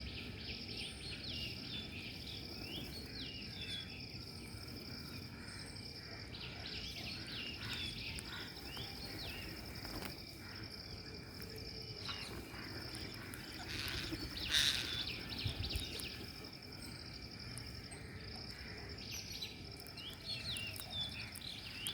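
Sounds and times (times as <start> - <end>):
high insect drone: 0.0 - 21.9
quick chirping bird calls: 12.1 - 16.5.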